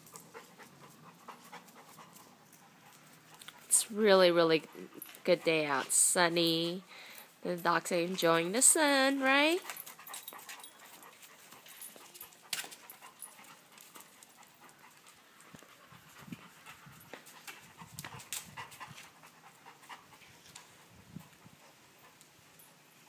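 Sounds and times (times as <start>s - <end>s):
dogs panting: 0.0s - 22.8s
faint clicks and rustles: 9.5s - 23.0s.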